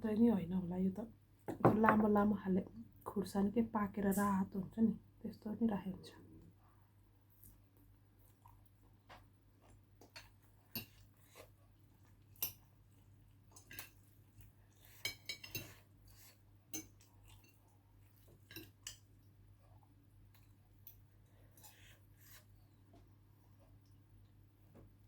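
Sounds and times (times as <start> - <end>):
utensils clinking on a plate: 14.8 - 15.9, 18.4 - 19.0.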